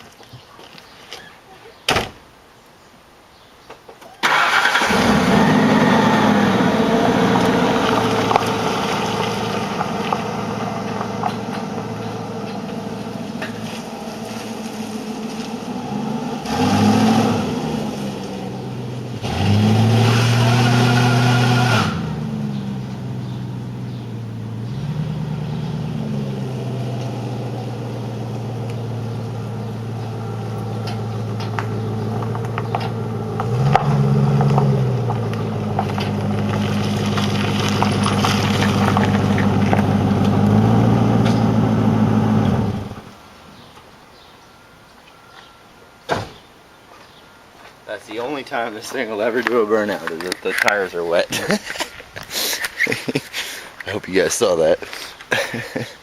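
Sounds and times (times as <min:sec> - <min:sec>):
engine revving: 0:04.2 - 0:43.2
car engine starting and idling: 0:04.2 - 0:43.8.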